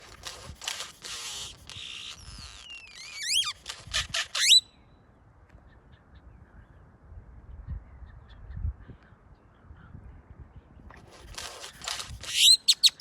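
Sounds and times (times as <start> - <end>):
grackle calling: 0.0 - 4.6, 11.5 - 13.0.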